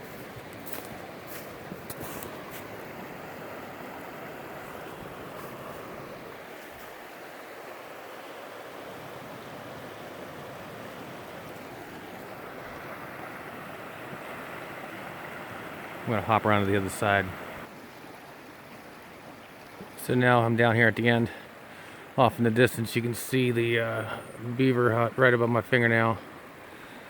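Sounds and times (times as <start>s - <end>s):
water rushing over small waterfalls: 0.0s - 20.3s.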